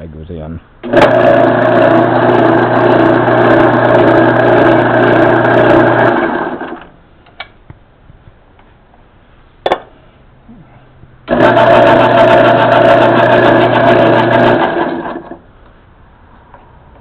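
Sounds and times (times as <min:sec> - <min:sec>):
lathe motor humming: 0:00.8 - 0:06.8, 0:11.3 - 0:15.4.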